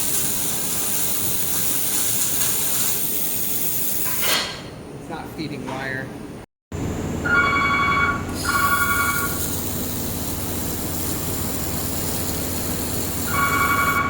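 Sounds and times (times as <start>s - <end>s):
machine hum: 6.1s - 14.0s
long electronic beeps: 7.3s - 9.4s, 13.3s - 14.0s.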